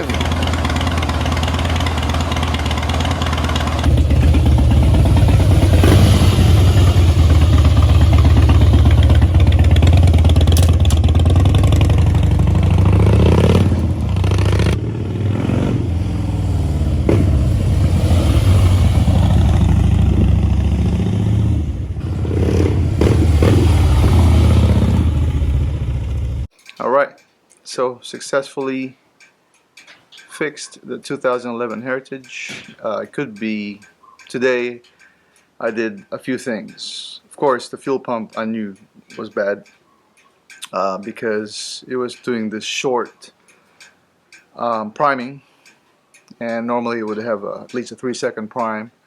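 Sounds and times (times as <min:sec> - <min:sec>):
motorcycle engine revving: 0:00.0 - 0:26.5.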